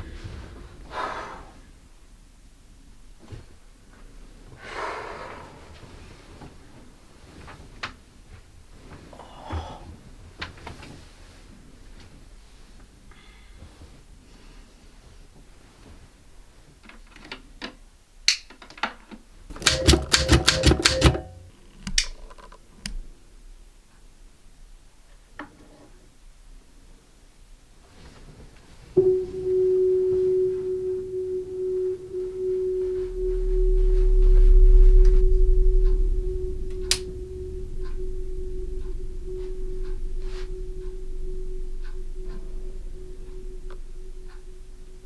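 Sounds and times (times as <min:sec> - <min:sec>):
eerie single-tone drone: 0:19.5 - 0:21.5, 0:29.0 - 0:45.0
manual typewriter typing: 0:19.6 - 0:21.4
sharp click: 0:19.6 - 0:22.1
deep rumble: 0:29.0 - 0:45.0.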